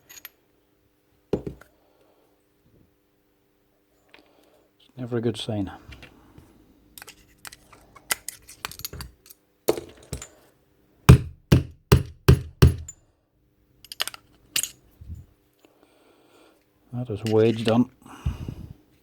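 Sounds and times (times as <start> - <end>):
sharp knocks on metal: 11.1 - 12.9.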